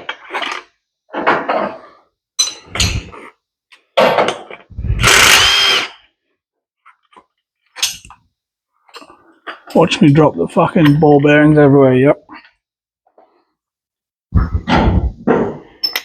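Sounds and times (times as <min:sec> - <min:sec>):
impact wrench bursts: 0:05.0 - 0:06.0.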